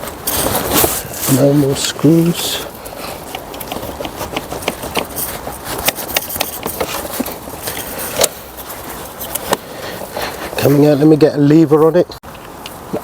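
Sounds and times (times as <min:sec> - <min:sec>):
clicks and knocks of engine parts: 0:00.0 - 0:10.3.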